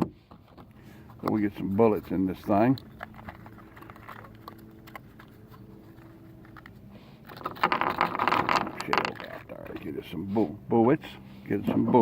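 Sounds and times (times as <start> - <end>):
cartridges rattling in a box: 7.3 - 9.8.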